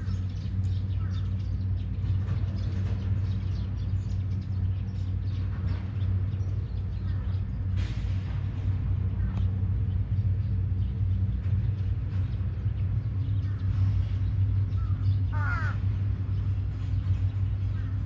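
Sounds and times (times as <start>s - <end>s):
steady low rumble: 0.0s - 18.0s
crow cawing: 15.3s - 15.9s.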